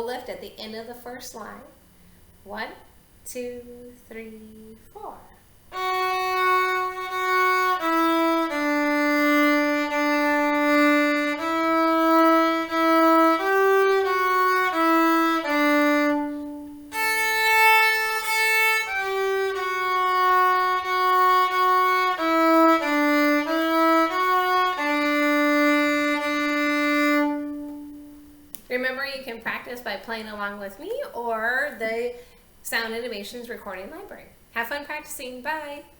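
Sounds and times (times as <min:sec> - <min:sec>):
solo viola melody: 0:05.7 - 0:28.5.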